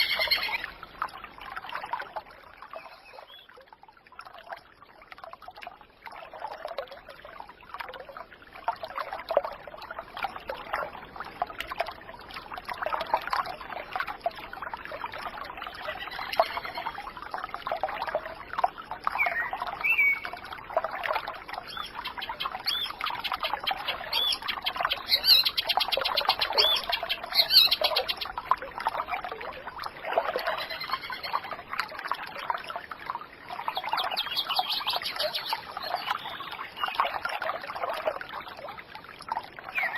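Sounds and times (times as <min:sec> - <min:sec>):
bird calls: 0:00.0 - 0:00.7, 0:21.7 - 0:28.3, 0:30.4 - 0:31.5, 0:33.7 - 0:37.0
water trickling and gurgling: 0:00.0 - 0:39.9.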